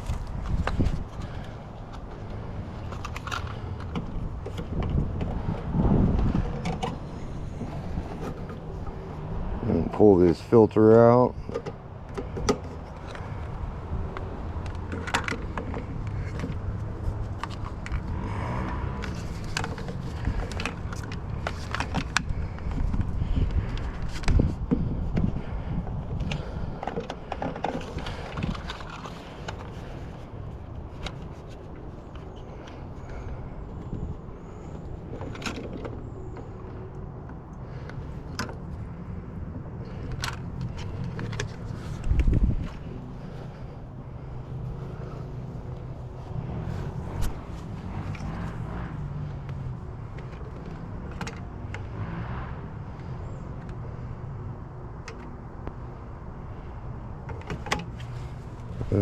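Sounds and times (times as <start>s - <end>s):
clicks and knocks of small parts: 0.0s - 8.6s, 14.1s - 24.5s, 26.2s - 30.1s, 39.8s - 42.8s
light clicks and knocks of tools: 0.0s - 9.2s, 9.8s - 52.0s, 53.0s - 56.0s
steady low rumble: 0.0s - 57.3s.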